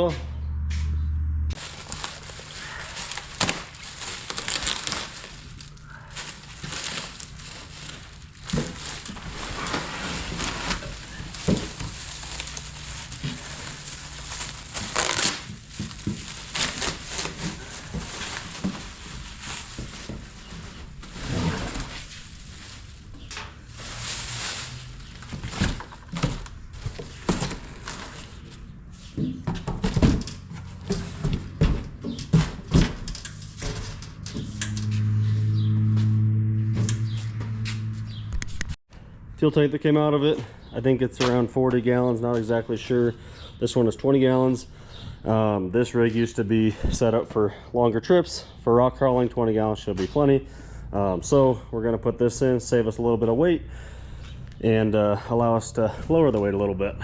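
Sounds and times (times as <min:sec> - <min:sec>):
low-pitched steady hum: 0:34.0 - 0:39.4.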